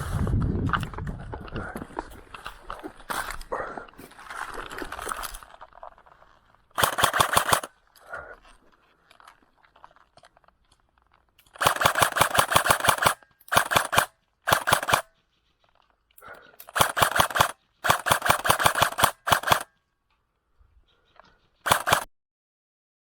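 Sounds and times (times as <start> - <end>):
airsoft gun firing bursts: 6.8 - 7.7, 11.6 - 15.1, 16.7 - 19.7, 21.6 - 22.1.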